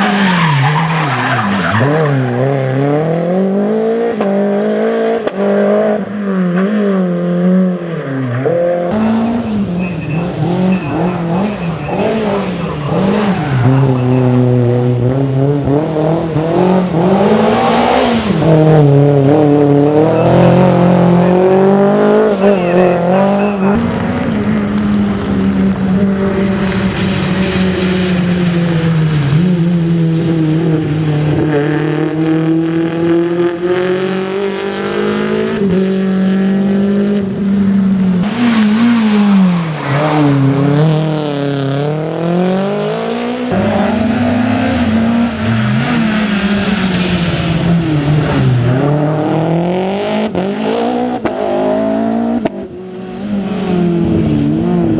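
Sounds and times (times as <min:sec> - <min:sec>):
rally car engines at full throttle: 0:00.0 - 0:54.9.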